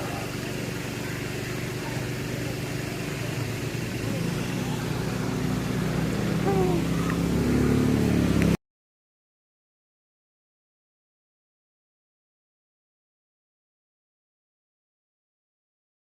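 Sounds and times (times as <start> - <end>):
motorcycle engine accelerating: 0.0 - 8.6.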